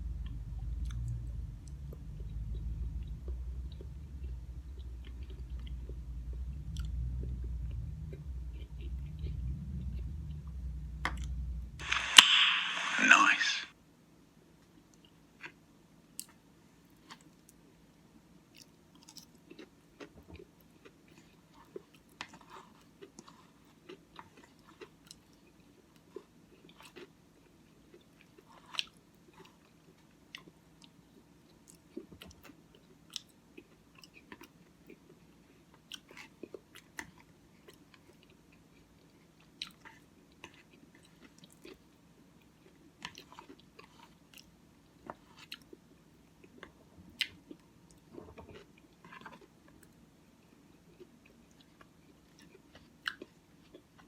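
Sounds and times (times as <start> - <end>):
close-up chewing: 0.0 - 12.0, 18.5 - 54.0
low steady hum: 0.0 - 13.7.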